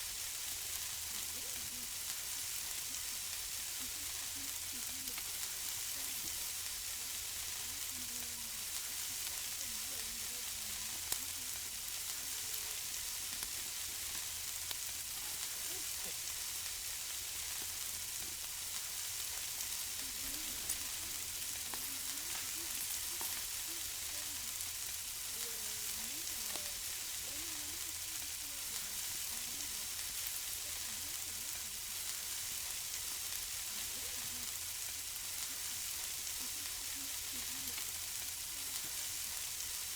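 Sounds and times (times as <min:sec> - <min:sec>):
food sizzling on a grill: 0:00.0 - 0:39.9
pops and crackles: 0:19.3 - 0:24.1.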